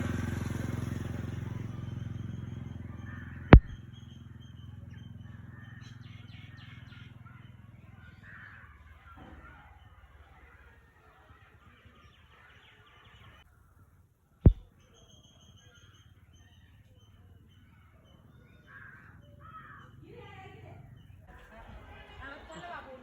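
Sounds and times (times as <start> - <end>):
vehicle engine humming: 0.0 - 6.1
sharp loud click: 3.5 - 3.8.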